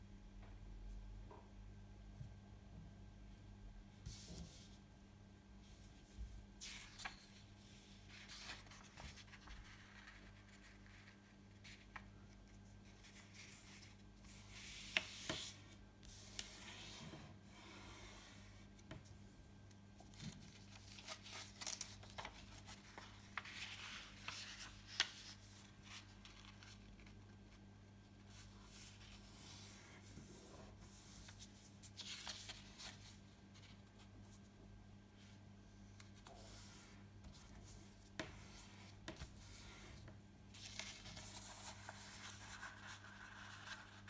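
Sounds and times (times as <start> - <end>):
faint electrical hum: 0.0 - 44.0
paper being folded and creased: 6.6 - 17.0, 20.0 - 30.1, 30.9 - 34.0, 40.5 - 44.0.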